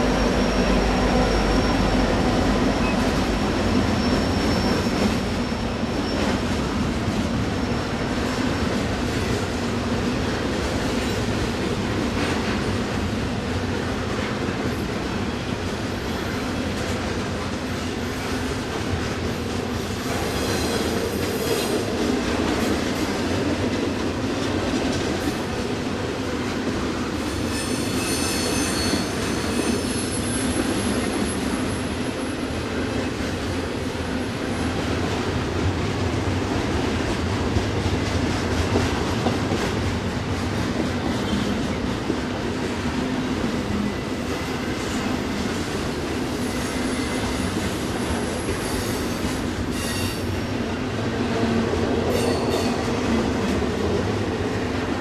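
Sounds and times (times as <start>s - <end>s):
train wheels rumbling on rails: 0.0s - 55.0s
high-pitched wheel squeal: 0.1s - 3.1s, 3.9s - 6.2s, 27.4s - 32.0s, 46.4s - 50.5s.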